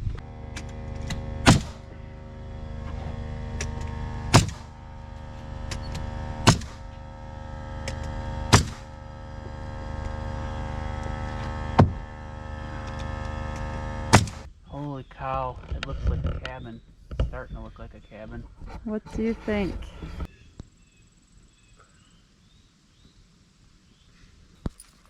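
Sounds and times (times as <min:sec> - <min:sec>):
steady hum: 0:00.0 - 0:22.4
nailing strikes: 0:00.6 - 0:01.9, 0:03.6 - 0:04.8, 0:05.7 - 0:07.0, 0:07.8 - 0:08.9, 0:14.1 - 0:14.5.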